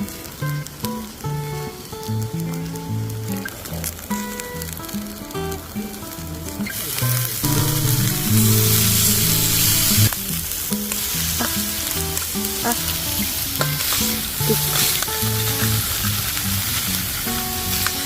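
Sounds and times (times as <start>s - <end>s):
food sizzling in a hot pan: 0.0s - 18.0s
soft background music: 7.4s - 10.2s.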